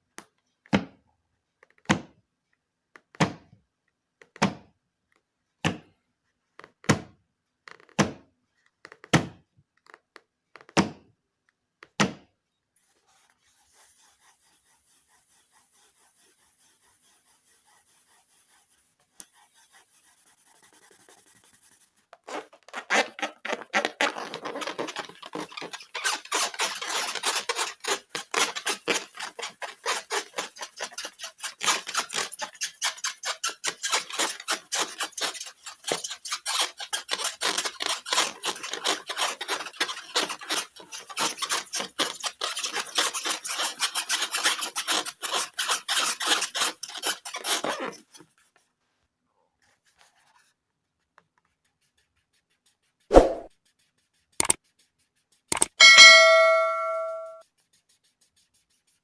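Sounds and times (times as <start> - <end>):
rapid rubbing strokes: 12.8 - 27.3, 51.4 - 59.0.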